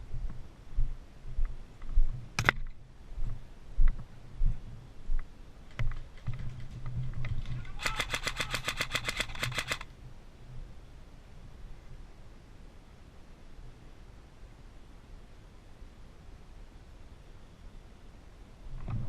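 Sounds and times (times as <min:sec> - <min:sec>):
airsoft gun full-auto burst: 0:07.7 - 0:09.9.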